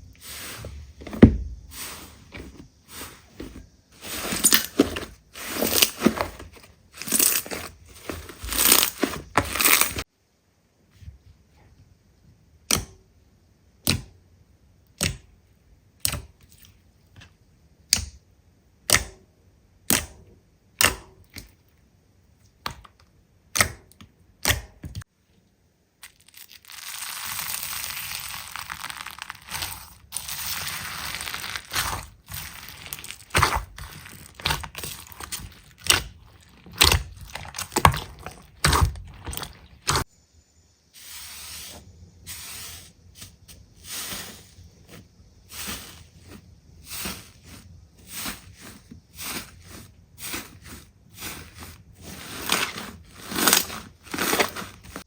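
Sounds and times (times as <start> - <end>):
slime squishing: 0.2 - 10.0, 26.0 - 40.1, 41.6 - 55.0
rustling hiss: 40.6 - 55.0.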